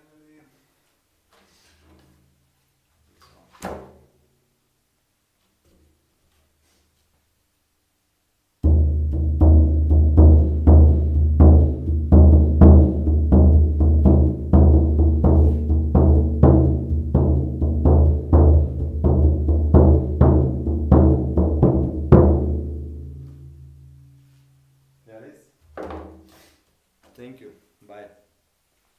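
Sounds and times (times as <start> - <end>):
frame drum beating: 8.6 - 24.2.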